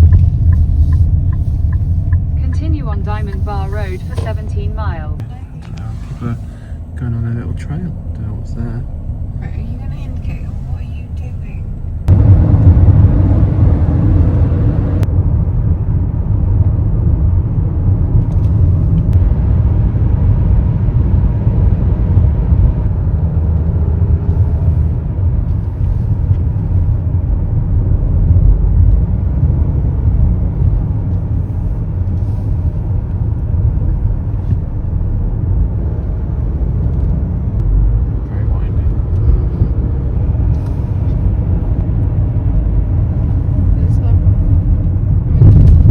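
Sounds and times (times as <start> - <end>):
road and wind noise: 0.0 - 45.9.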